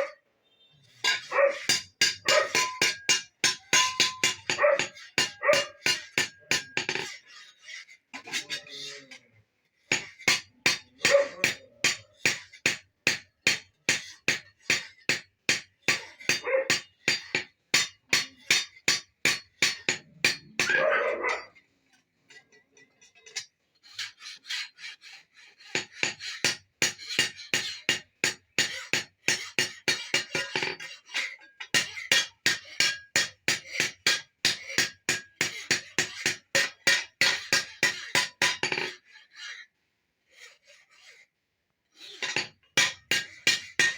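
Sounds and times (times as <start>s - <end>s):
hammer striking metal on anvil: 1.0s - 7.0s, 9.9s - 21.4s, 25.8s - 30.9s, 31.7s - 39.0s, 42.2s - 43.9s.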